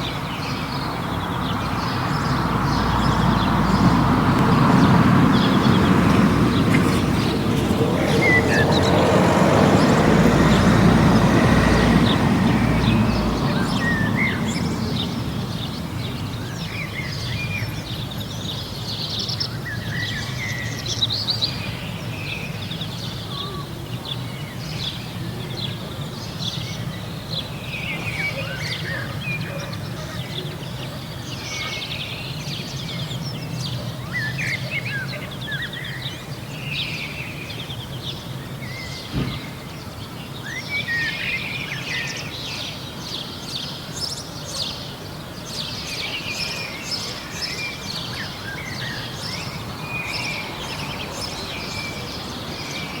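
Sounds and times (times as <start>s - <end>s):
songbirds chirping: 0.0s - 53.0s
car passing: 0.6s - 18.4s, 45.2s - 53.0s.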